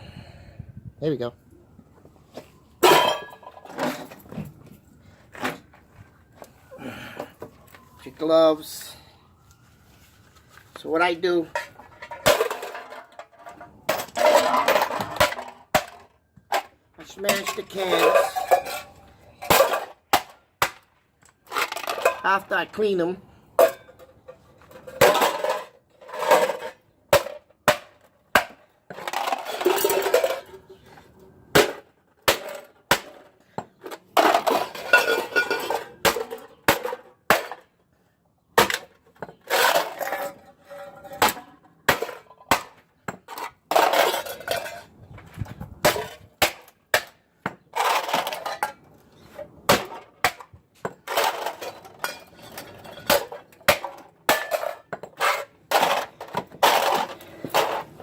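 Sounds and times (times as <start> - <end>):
aluminum cans being smashed: 2.8 - 4.2, 11.5 - 22.8, 24.8 - 30.7, 31.5 - 37.8, 38.6 - 44.9, 45.8 - 48.8, 49.7 - 58.0.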